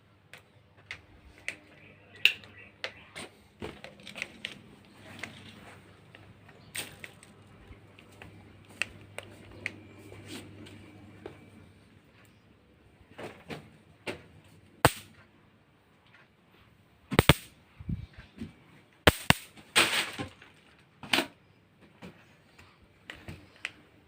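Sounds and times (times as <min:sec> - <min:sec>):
sharp snaps and cracks: 0:03.7 - 0:09.8, 0:14.8 - 0:15.2, 0:17.2 - 0:17.5, 0:19.1 - 0:20.8.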